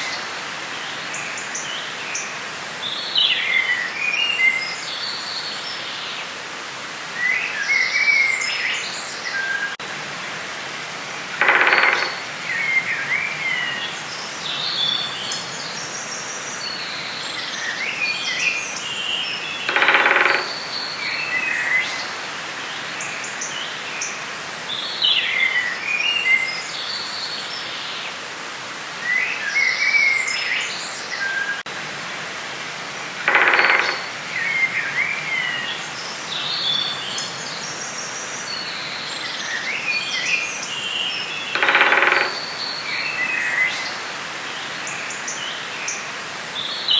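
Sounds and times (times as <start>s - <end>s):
steady background hiss: 0.0s - 46.9s
lower-pitched bird call: 11.4s - 13.9s, 19.6s - 22.0s, 33.2s - 35.8s, 41.5s - 43.8s.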